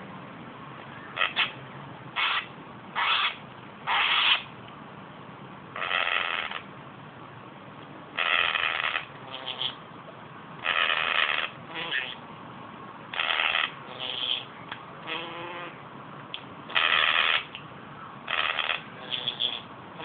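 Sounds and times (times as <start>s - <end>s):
pet trumpet-like calls: 1.2s - 1.6s, 2.2s - 4.5s, 5.8s - 6.6s, 8.2s - 9.8s, 10.6s - 12.2s, 13.1s - 15.8s, 16.7s - 17.5s, 18.3s - 20.0s.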